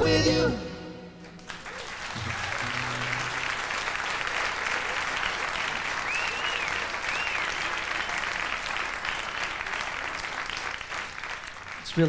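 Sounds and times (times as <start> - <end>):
audience applauding: 1.2 - 12.0
short whistles: 6.0 - 8.3.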